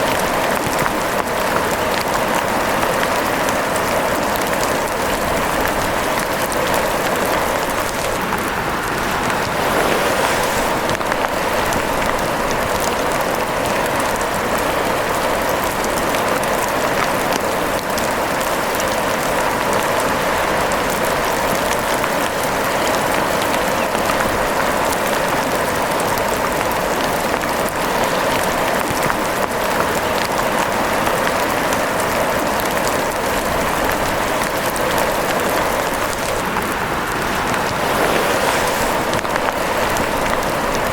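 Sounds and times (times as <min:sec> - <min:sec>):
steady rain: 0:00.0 - 0:40.9.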